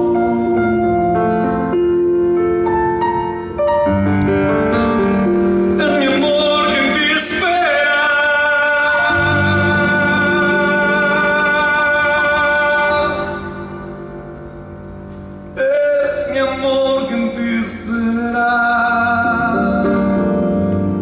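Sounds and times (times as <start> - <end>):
person singing: 0.0 - 1.9, 5.7 - 14.0, 15.5 - 21.0
keyboard chords: 0.0 - 21.0.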